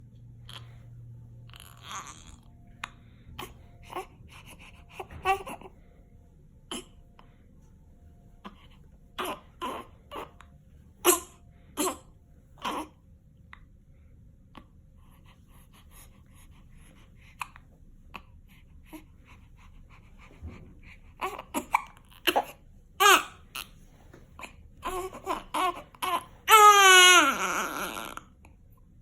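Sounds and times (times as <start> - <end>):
baby crying: 1.5 - 2.6, 3.4 - 5.7, 9.2 - 10.4, 21.2 - 23.7, 24.4 - 28.2.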